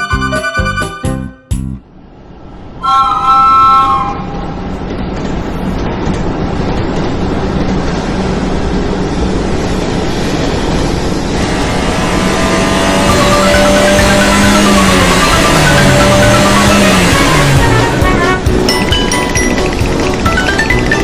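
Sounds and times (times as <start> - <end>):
train rumbling past: 1.5 - 21.0
short train horn chord: 2.8 - 4.8, 13.2 - 18.9.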